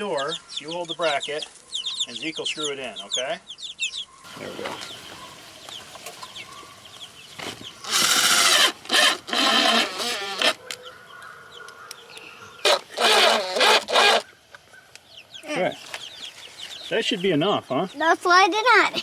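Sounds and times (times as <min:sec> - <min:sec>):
chickens clucking: 0:00.0 - 0:19.0
cordless drill driving screws: 0:07.8 - 0:10.8, 0:12.6 - 0:14.3.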